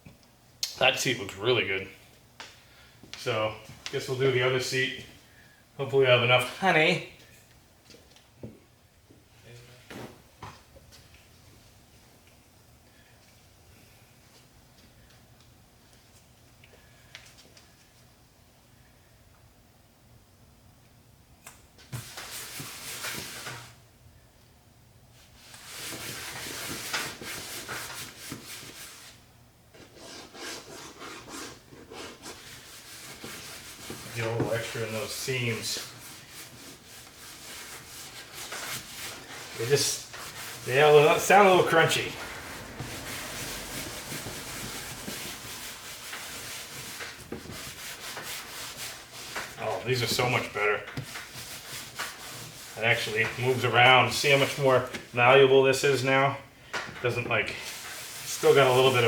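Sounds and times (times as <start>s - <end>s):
hand scrubbing vinyl seat: 29.8s - 53.6s, 57.6s - 59.0s.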